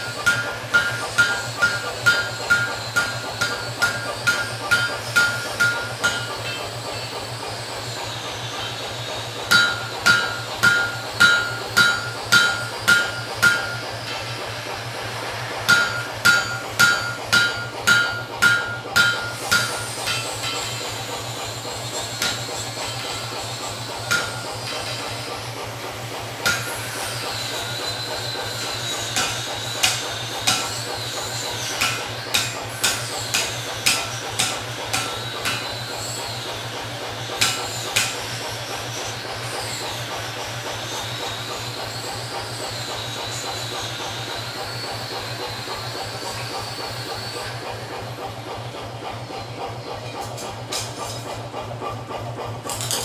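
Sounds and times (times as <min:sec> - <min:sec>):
hammer striking hot metal: 0:00.0 - 0:07.5, 0:08.5 - 0:25.4, 0:26.4 - 0:39.6, 0:50.1 - 0:51.4.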